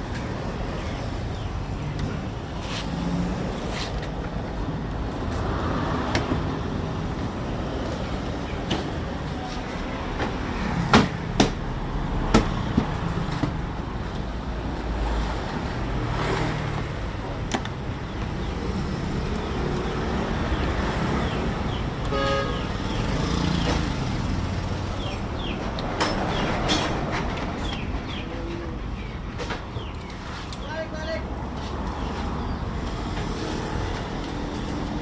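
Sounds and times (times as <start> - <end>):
road traffic noise: 0.0 - 35.0
car horn toot: 22.1 - 22.7.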